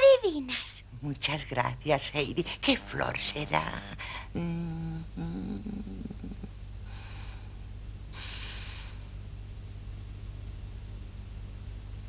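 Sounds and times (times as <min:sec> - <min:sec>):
woman humming: 0:02.6 - 0:07.5
woman sniffing: 0:08.2 - 0:09.1.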